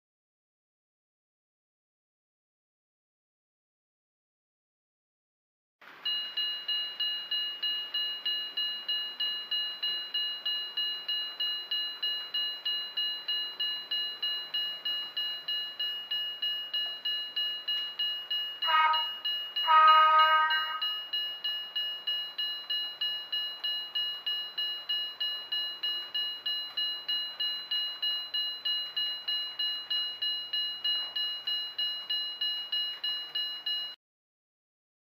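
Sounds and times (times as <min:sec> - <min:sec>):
level crossing bell ringing: 0:06.0 - 0:34.0
horn-like tone: 0:18.6 - 0:21.1.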